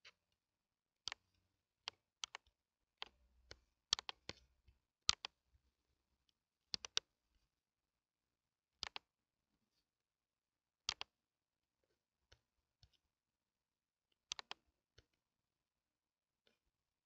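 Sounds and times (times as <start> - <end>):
mouse and keyboard clicks: 1.0 - 4.4, 5.1 - 5.4, 6.8 - 7.1, 8.8 - 9.1, 10.9 - 11.1, 14.3 - 15.1.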